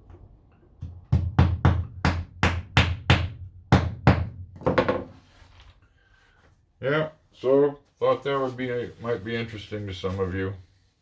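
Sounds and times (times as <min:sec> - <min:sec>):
hammer tapping wooden plugs: 0:00.8 - 0:05.1.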